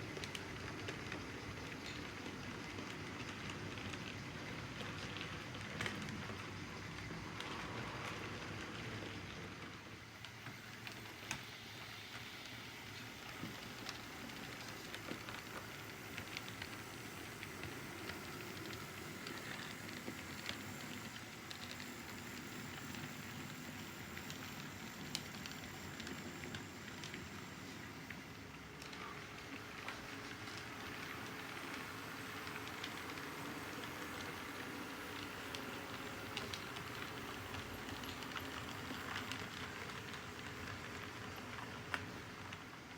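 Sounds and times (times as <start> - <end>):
model train rolling whir: 0.0 - 42.9.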